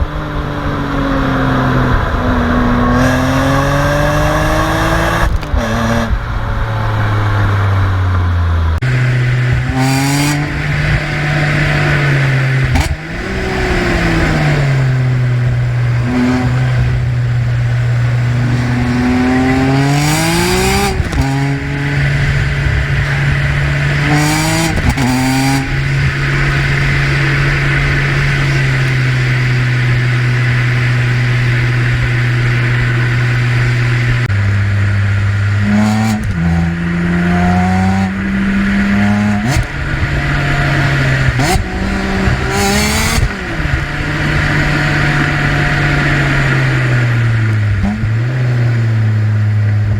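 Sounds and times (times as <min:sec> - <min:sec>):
car engine idling and revving: 0:00.0 - 0:49.9.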